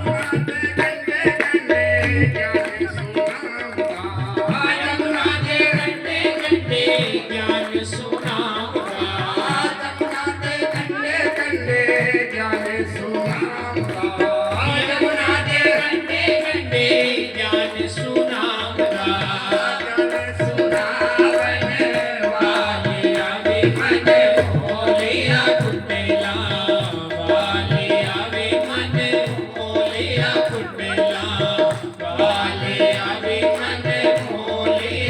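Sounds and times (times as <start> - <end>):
tabla beat: 0.0 - 35.0.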